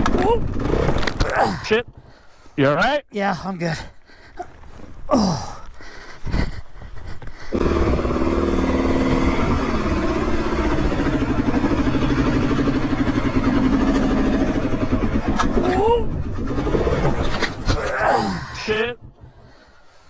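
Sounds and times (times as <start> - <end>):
dirt bike engine idling: 6.4 - 17.9
knocks and scrapes: 13.5 - 18.0.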